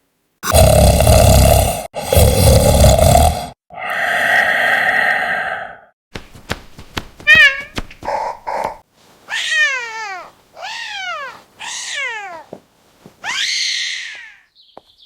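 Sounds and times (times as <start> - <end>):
cat meowing: 7.3 - 8.6, 9.3 - 12.6, 13.2 - 14.4.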